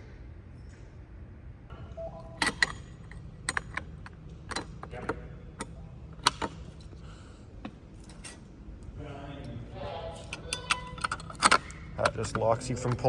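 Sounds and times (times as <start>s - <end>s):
metallic clicks and knocks: 2.4s - 6.8s, 10.2s - 13.0s.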